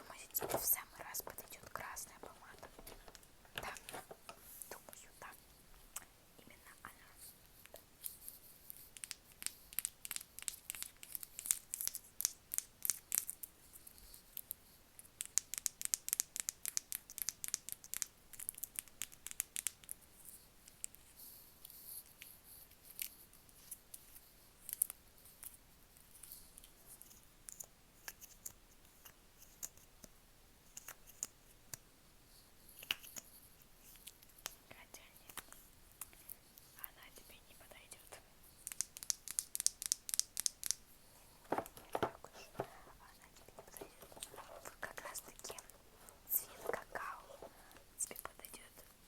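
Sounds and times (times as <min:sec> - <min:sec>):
crisp taps on objects: 0:00.1 - 0:04.4, 0:41.4 - 0:48.3.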